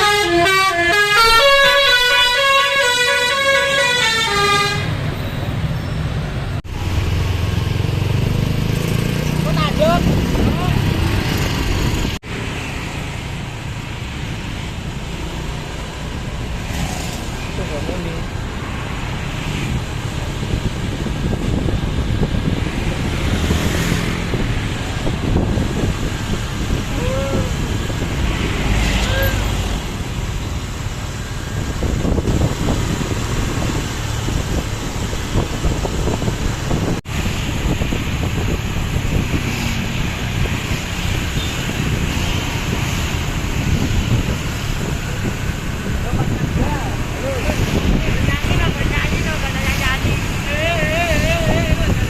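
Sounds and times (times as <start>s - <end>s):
road traffic noise: 0.0s - 52.0s
wind buffeting microphone: 6.6s - 12.2s, 18.2s - 52.0s.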